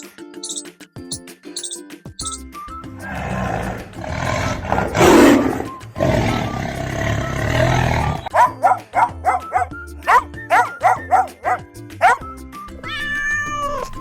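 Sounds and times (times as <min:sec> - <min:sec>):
soft background music: 0:00.0 - 0:14.0
large animal roaring: 0:03.0 - 0:08.4.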